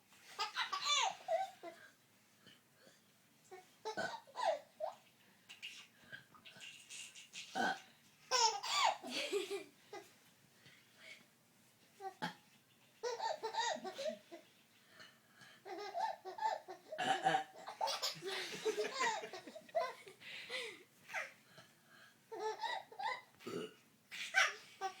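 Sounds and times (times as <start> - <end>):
baby laughing: 0.4 - 1.8, 8.3 - 10.1, 13.0 - 14.4, 15.7 - 17.0, 17.6 - 20.1.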